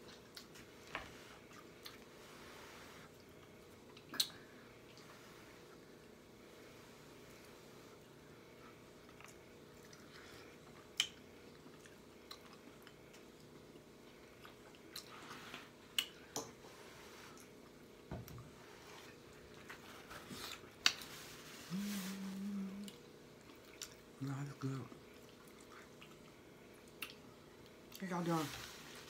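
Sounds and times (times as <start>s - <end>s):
person chewing: 0.0s - 2.2s, 8.6s - 16.6s, 18.9s - 24.2s, 24.9s - 28.0s
lip smacks and mouth clicks: 3.9s - 5.1s, 10.7s - 13.6s, 15.9s - 16.5s, 25.2s - 28.0s.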